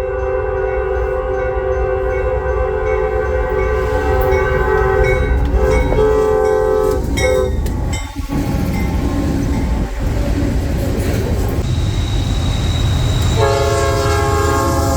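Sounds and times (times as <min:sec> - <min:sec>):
train horn chord: 0:00.0 - 0:07.5, 0:13.2 - 0:14.9
train rumble: 0:00.0 - 0:14.9.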